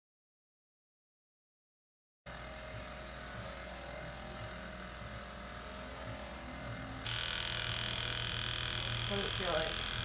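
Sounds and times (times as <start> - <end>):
massage gun humming and whining: 2.3 - 10.0.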